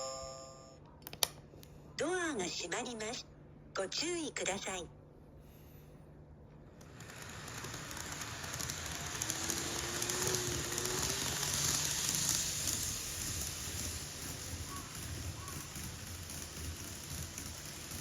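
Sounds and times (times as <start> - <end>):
faint hum: 0.0 - 7.0
train wheels rushing on rail: 6.8 - 18.0.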